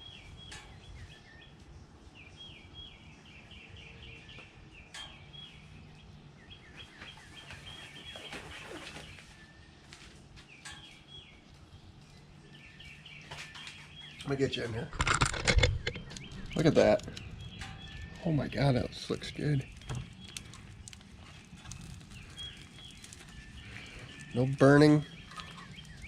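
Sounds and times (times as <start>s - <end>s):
songbird chirping: 0.0s - 26.0s
sharp clicks and clatters: 14.9s - 18.2s.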